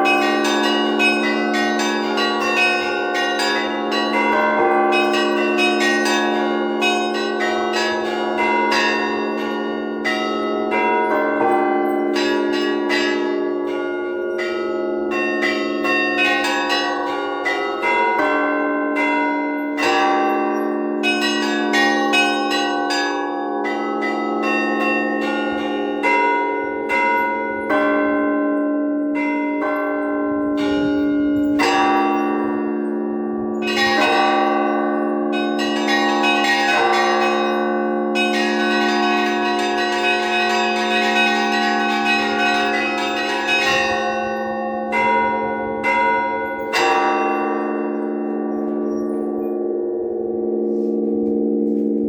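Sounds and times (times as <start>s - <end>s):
hum of large bells: 0.0s - 52.0s
small bells struck: 29.2s - 49.6s.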